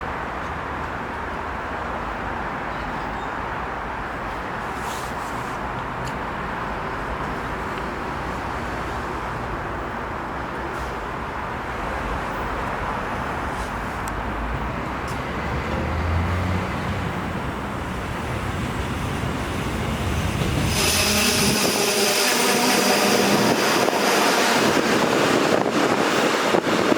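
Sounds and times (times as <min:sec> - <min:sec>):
electric train approaching: 0:14.5 - 0:26.9.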